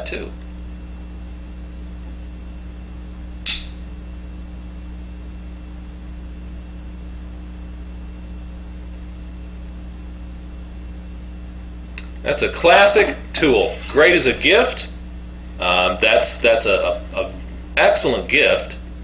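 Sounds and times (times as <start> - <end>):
electrical mains hum: 0.0 - 19.0
short sharp click: 3.4 - 3.8.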